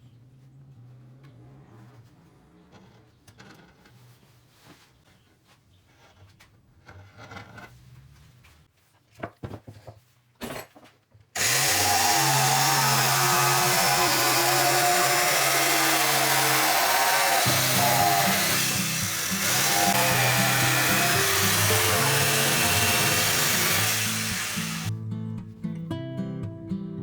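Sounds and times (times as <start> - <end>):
power tool whirring: 11.4 - 24.9.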